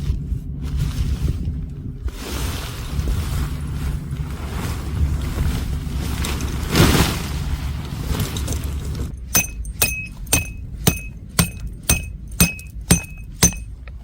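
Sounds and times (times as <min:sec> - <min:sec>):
low rumble: 0:00.0 - 0:14.0
sharp ringing clinks: 0:09.2 - 0:13.7.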